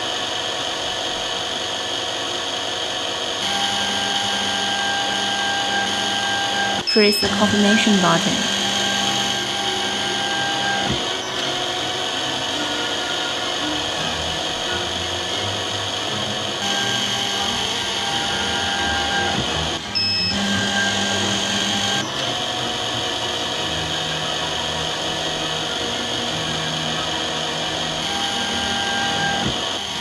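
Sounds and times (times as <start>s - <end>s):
drill spindle whining: 0.0s - 30.0s
short electronic beep: 6.8s - 8.2s, 20.0s - 20.9s.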